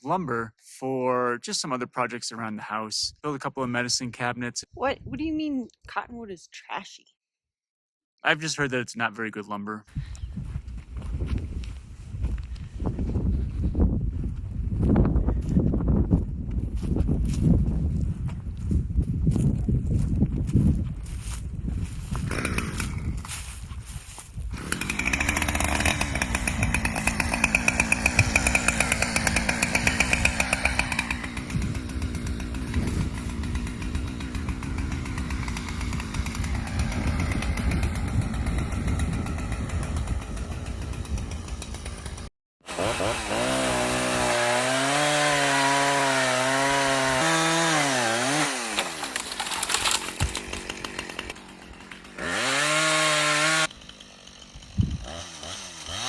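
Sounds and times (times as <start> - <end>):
chainsaw cutting wood: 21.8 - 56.0.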